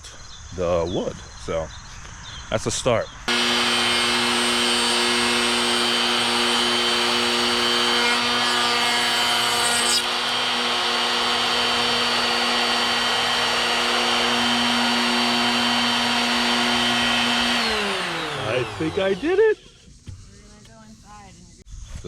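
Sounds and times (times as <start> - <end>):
wood router whining: 3.3 - 20.2.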